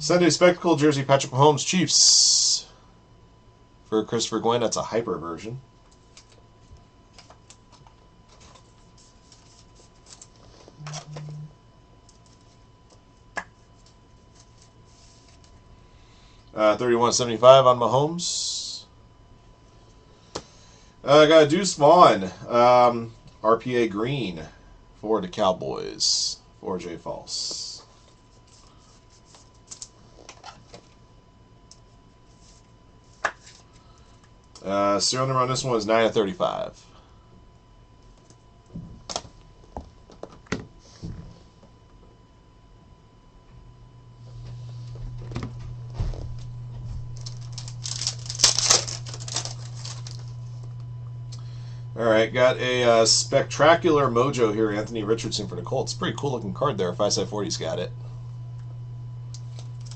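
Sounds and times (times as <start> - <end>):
short low hum: 5.0 - 21.1, 40.7 - 59.9
trading cards being handled: 7.1 - 11.4, 12.0 - 15.6, 32.3 - 34.6, 47.0 - 50.6.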